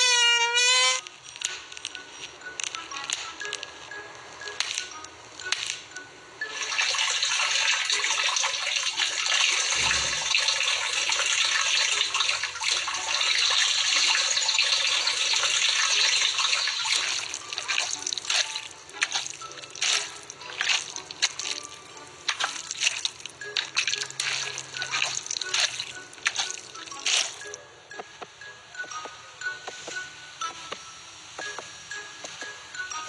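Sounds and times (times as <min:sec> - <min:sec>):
water dripping and splashing: 0:06.6 - 0:27.6.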